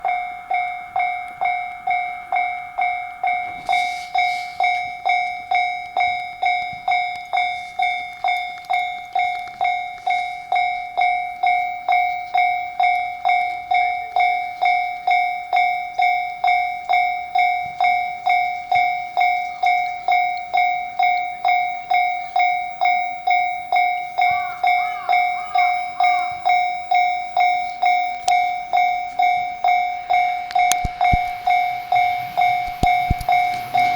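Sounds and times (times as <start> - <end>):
level crossing bell dinging: 9.8 - 33.9.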